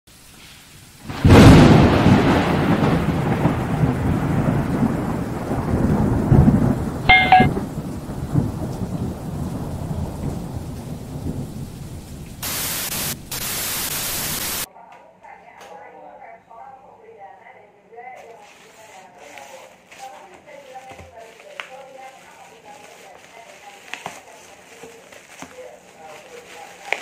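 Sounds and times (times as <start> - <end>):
rain-like hiss: 0.1 - 14.7
thunder rolling: 1.1 - 14.7
brief chime-like tone: 7.1 - 7.6
static hiss burst: 12.4 - 14.7.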